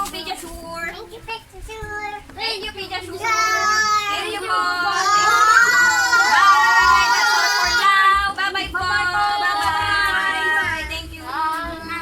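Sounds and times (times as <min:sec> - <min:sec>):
music: 0:00.0 - 0:12.0.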